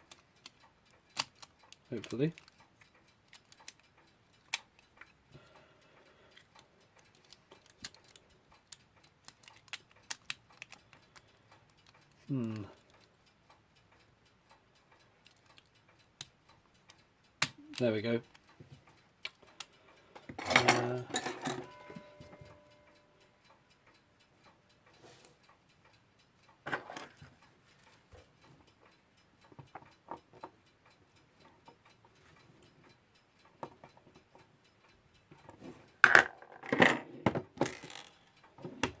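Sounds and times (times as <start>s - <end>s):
small metal parts clinking: 20.3s - 21.8s, 36.0s - 38.3s
metal clatter with ring: 20.4s - 22.2s.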